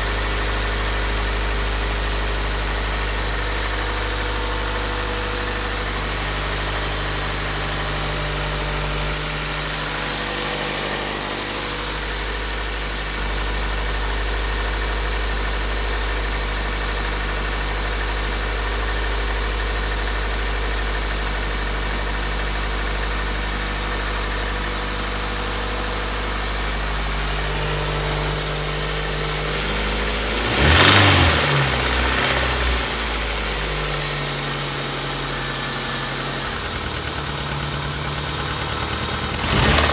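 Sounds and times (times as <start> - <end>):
car engine idling with knocking: 0.0 - 39.9
engine revving: 2.9 - 13.9, 23.3 - 39.9.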